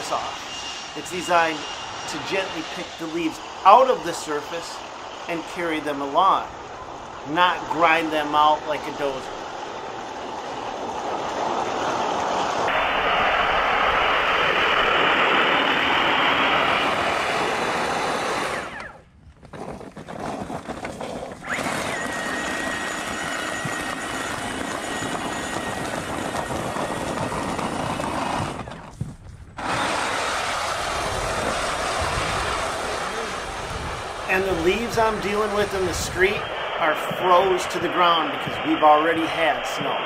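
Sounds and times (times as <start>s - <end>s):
mower engine running: 15.0s - 19.0s, 19.8s - 29.0s, 29.6s - 36.0s.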